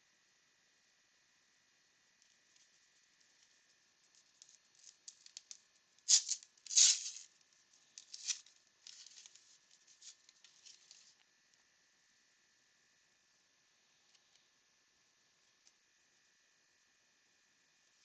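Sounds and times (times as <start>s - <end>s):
foil wrapper crinkling: 2.2s - 11.2s.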